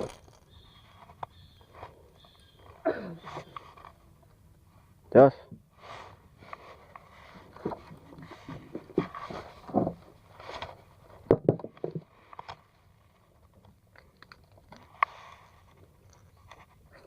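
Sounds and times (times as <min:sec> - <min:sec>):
handling knocks and scrapes: 0:00.0 - 0:02.0, 0:05.8 - 0:12.6.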